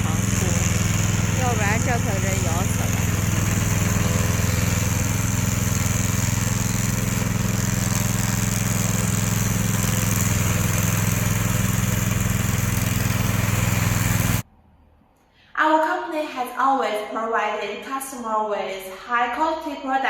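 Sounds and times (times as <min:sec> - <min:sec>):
lawn mower engine running: 0:00.0 - 0:14.4.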